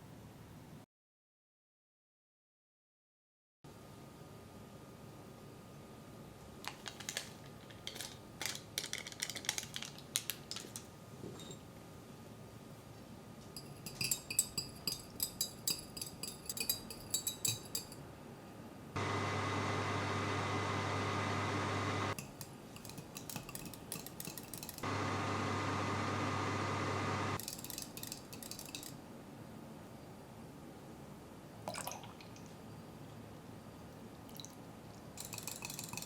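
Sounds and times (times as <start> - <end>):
utensils and dishes clinking: 13.6 - 18.0, 22.2 - 24.8, 35.2 - 36.0
kitchen appliance humming: 19.0 - 22.2, 24.8 - 27.4.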